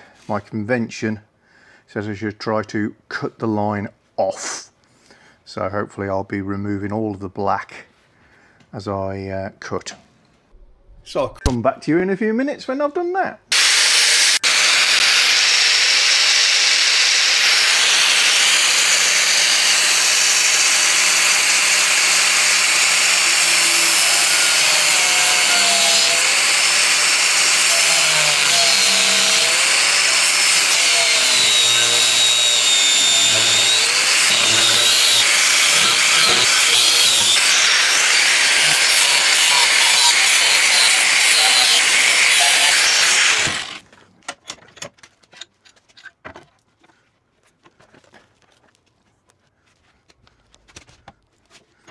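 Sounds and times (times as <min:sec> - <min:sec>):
disc cutter cutting sheet steel: 0:13.5 - 0:43.8.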